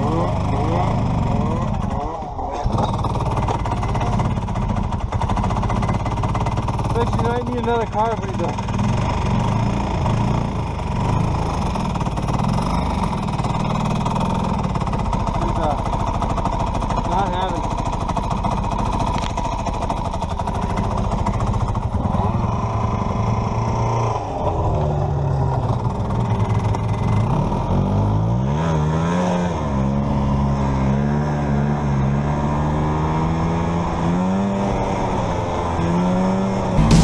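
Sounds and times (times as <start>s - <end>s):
two-stroke engine revving: 0.0s - 19.1s, 36.8s - 37.0s.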